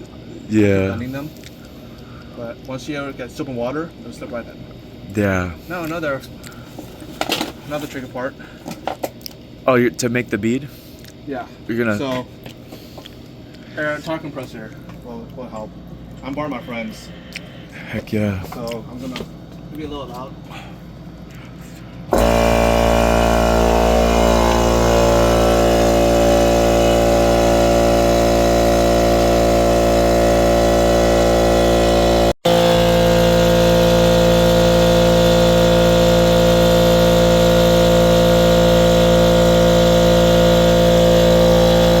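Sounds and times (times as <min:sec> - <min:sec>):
air compressor running: 0:00.0 - 0:03.7, 0:04.8 - 0:09.2, 0:20.4 - 0:42.0.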